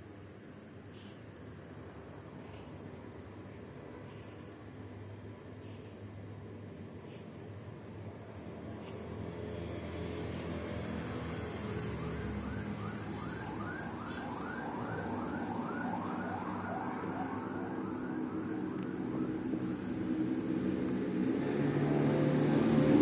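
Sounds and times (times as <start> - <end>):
siren wailing: 11.1 - 19.8.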